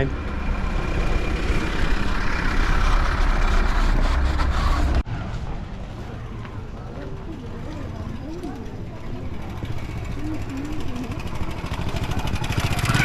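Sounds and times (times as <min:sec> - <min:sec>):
bus engine rumble: 0:00.0 - 0:13.0
street traffic noise: 0:00.0 - 0:13.0.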